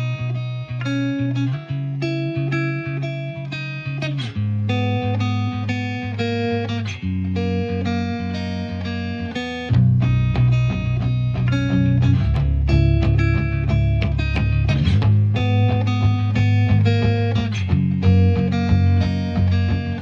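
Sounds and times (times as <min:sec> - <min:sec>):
plucked guitar music: 0:00.0 - 0:20.0.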